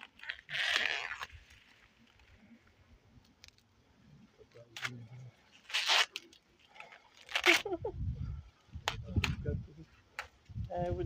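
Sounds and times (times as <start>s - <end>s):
corn husks rustling and tearing: 0.0s - 2.4s, 4.6s - 7.8s.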